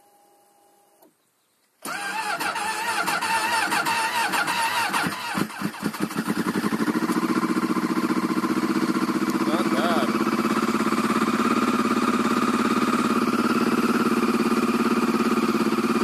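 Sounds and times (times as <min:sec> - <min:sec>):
snowmobile engine cranking: 0:01.8 - 0:07.6
snowmobile engine idling: 0:05.2 - 0:16.0.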